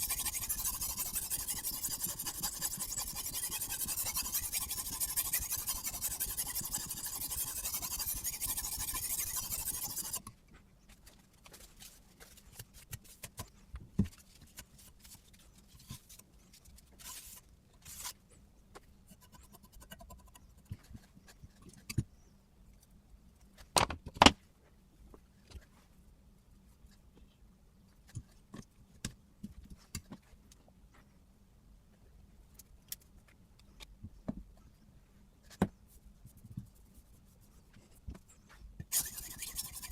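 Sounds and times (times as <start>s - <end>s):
sharpening stone scraping knife blade: 0.0s - 10.2s, 38.9s - 39.9s.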